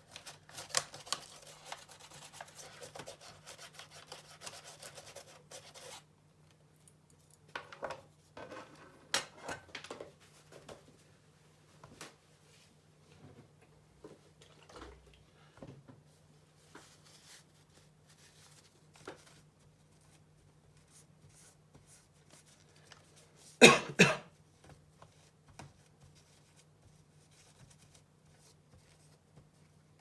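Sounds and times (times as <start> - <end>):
person coughing: 23.6 - 24.3.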